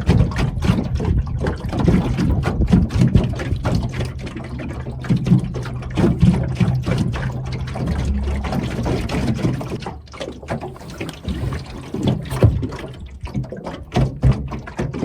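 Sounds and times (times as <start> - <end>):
water splashing around boat: 0.0 - 15.0
low steady hum: 2.6 - 13.3.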